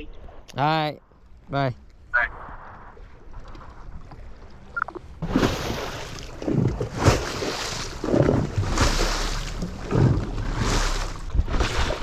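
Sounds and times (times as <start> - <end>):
wind: 0.0 - 12.0
water surging around boat: 3.5 - 12.0.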